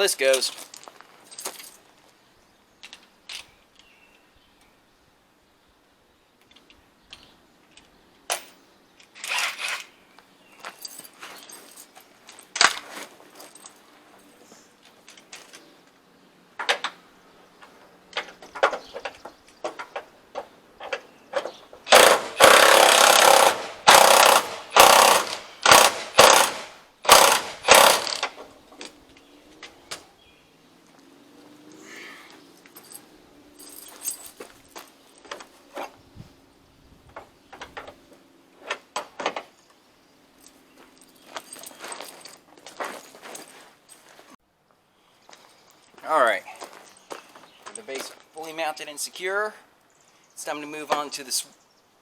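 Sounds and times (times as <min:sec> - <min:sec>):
electric impact wrench hammering: 0:21.8 - 0:28.5.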